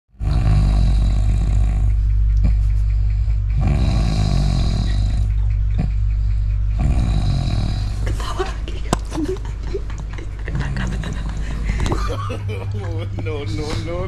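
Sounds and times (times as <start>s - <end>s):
person snoring loudly: 0.2s - 2.0s, 3.6s - 5.9s, 6.8s - 8.1s.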